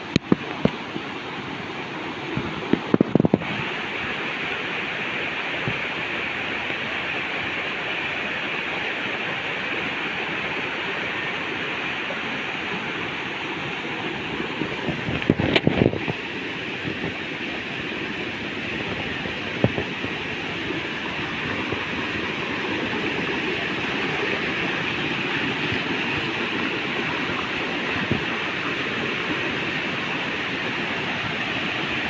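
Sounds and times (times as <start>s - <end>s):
waterfall rushing: 0.0s - 32.0s.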